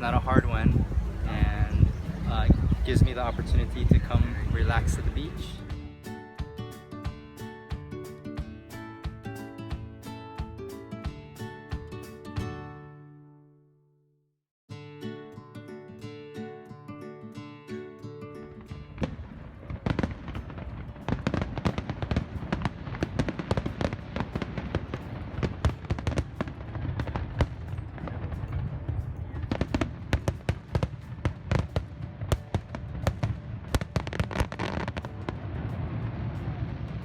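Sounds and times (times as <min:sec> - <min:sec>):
fireworks bangs and pops: 0:18.9 - 0:37.0.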